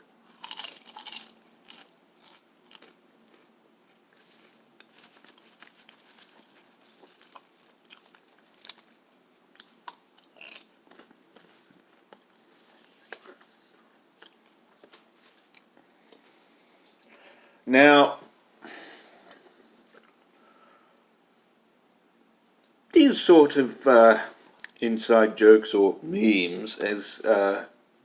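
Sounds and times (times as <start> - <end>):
person crunching snack: 0.2 - 14.5.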